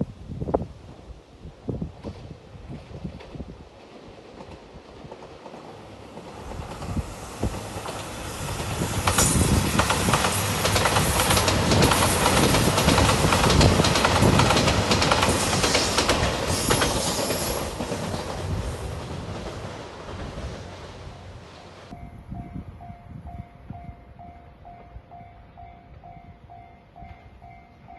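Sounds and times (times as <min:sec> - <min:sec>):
diesel train passing at speed: 0:00.5 - 0:27.9
wheels clicking over rail joints: 0:02.0 - 0:21.0.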